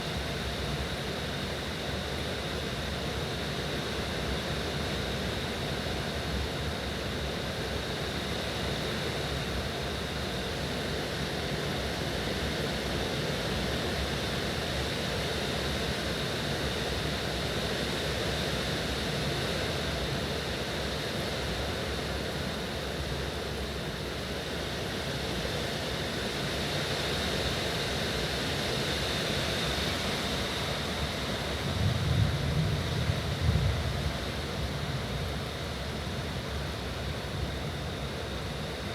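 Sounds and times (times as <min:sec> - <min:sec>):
heavy rain in strong wind: 0:29.6 - 0:38.9.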